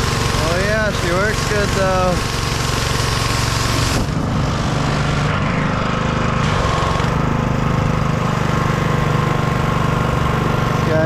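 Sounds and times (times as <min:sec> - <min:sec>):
pressure washer hiss: 0:00.0 - 0:05.3
pressure washer engine running: 0:00.0 - 0:11.0.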